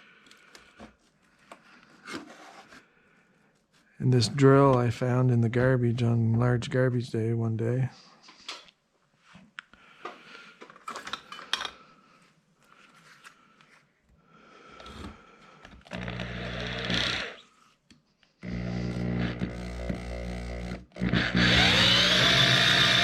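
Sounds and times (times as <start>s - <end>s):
electric drill running: 15.8s - 17.4s, 18.4s - 23.0s.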